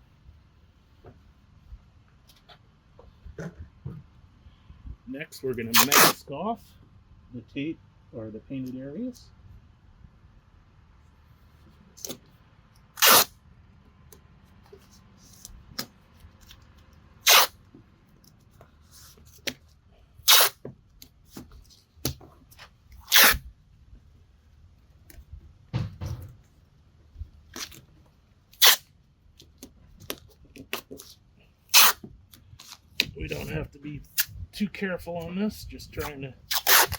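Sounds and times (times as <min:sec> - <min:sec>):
masking tape ripping off roll: 0:05.7 - 0:06.2, 0:13.0 - 0:13.3, 0:17.2 - 0:17.6, 0:20.2 - 0:20.6, 0:23.0 - 0:23.5, 0:28.5 - 0:28.9, 0:31.7 - 0:32.8, 0:36.0 - 0:36.9.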